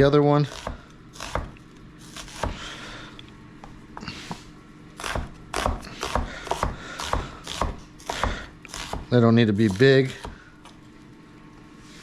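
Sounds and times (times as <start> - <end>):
knife chopping on cutting board: 0.5 - 1.6, 2.2 - 2.7, 5.0 - 10.5.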